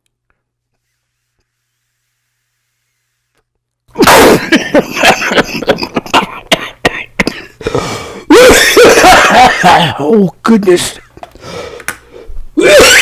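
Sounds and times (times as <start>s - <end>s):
man groaning: 4.0s - 4.6s, 8.3s - 8.8s, 12.6s - 13.0s
man coughing hard: 4.0s - 10.0s, 12.6s - 13.0s.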